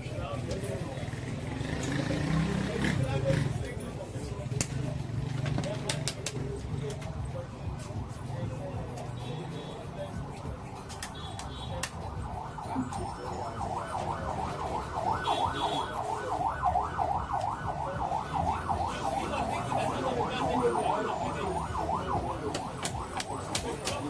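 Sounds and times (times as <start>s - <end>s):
emergency siren yelping: 11.9s - 24.0s.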